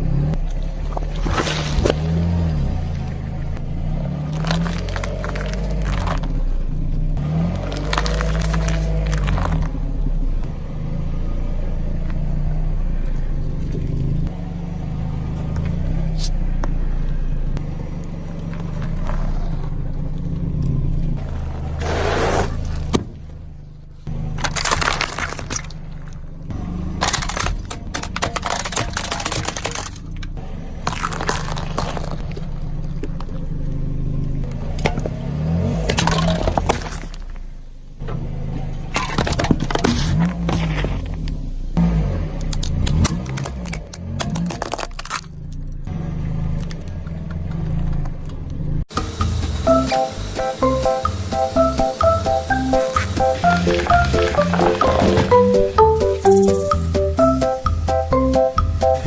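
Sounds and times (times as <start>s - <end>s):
car engine running: 0.0s - 59.0s
tyre crushing brittle objects: 4.2s - 6.4s, 7.2s - 9.8s, 24.2s - 33.4s, 42.4s - 45.7s.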